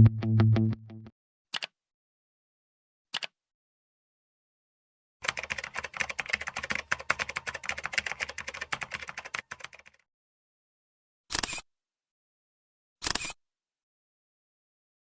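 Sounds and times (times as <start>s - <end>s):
computer keyboard typing: 5.2s - 10.0s.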